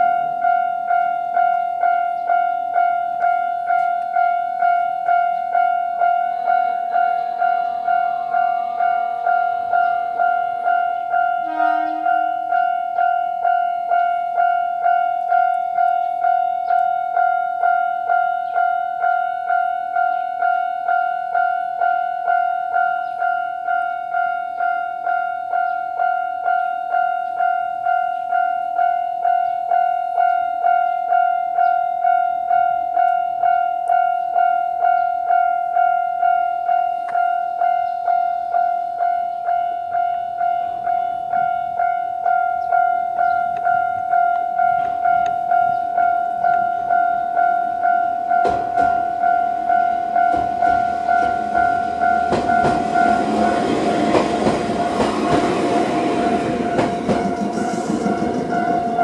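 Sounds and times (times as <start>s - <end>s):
level crossing warning bell: 0.0s - 59.0s.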